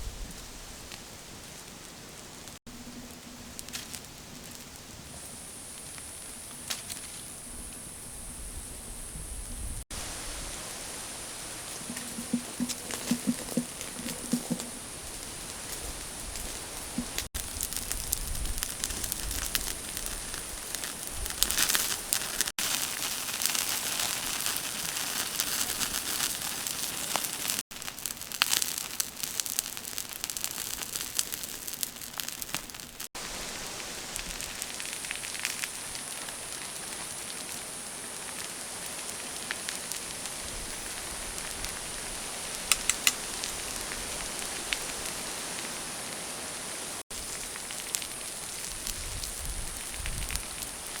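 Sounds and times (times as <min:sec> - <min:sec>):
chicken sizzling over wood fire: 0:00.1 - 0:51.0.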